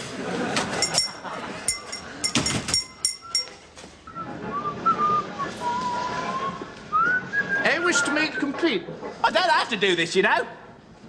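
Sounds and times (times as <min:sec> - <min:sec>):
sharp metallic clinks: 0:00.8 - 0:03.6
person whistling a tune: 0:03.2 - 0:08.1.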